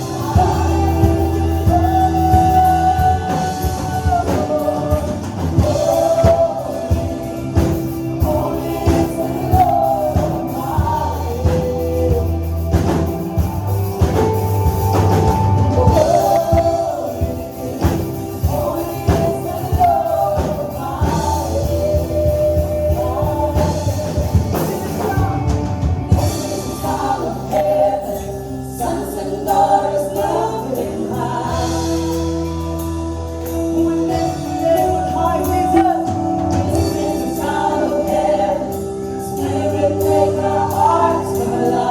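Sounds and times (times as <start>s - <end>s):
band with drums and bass: 0.0s - 41.9s
group of voices singing: 0.0s - 41.9s.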